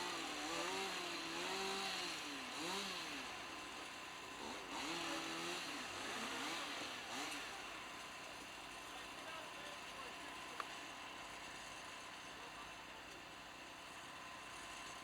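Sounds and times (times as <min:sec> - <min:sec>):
small engine revving: 0:00.0 - 0:07.8.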